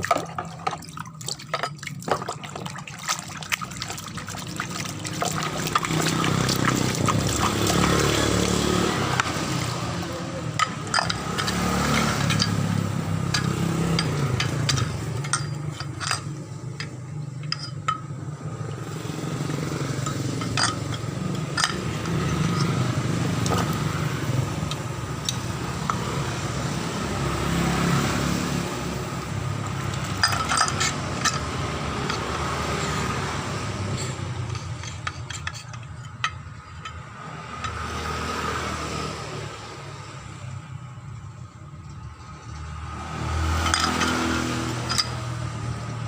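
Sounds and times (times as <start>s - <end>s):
scooter engine rough growl: 5.0s - 15.6s
metallic clinks: 10.4s - 18.2s, 19.9s - 24.0s, 43.6s - 45.8s.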